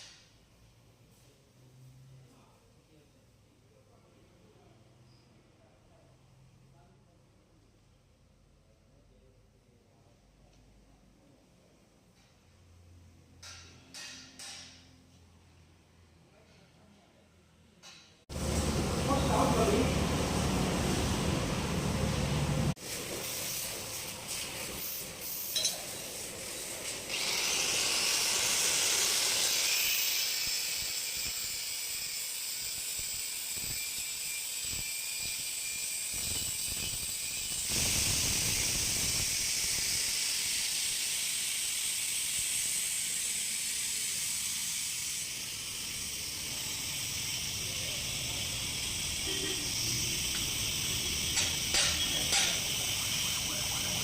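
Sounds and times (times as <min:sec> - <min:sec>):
high-pitched hiss: 0:22.8 - 0:26.7, 0:33.0 - 0:54.0.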